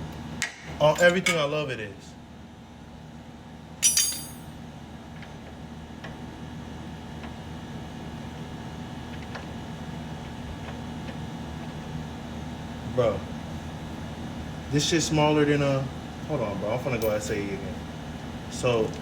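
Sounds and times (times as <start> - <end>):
metal hand tools clinking: 3.8 - 4.5.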